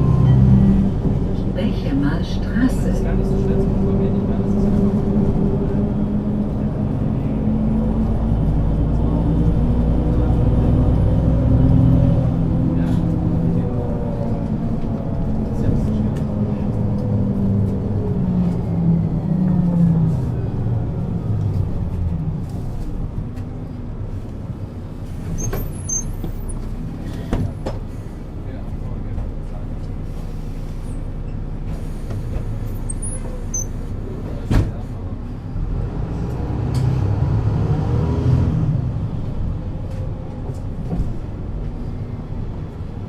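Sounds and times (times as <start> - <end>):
bus diesel engine revving: 0.0 - 43.0
brief high squeal: 25.4 - 26.2.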